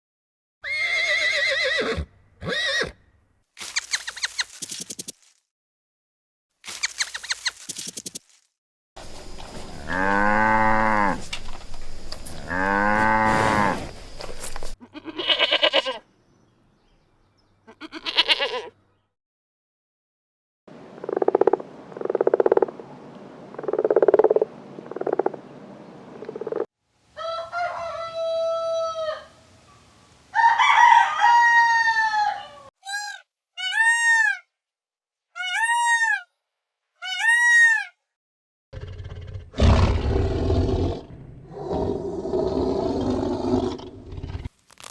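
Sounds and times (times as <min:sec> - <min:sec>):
low mooing calls: 0:09.6 - 0:11.4, 0:12.3 - 0:14.0
rooster crowing: 0:27.2 - 0:29.5, 0:30.3 - 0:32.7.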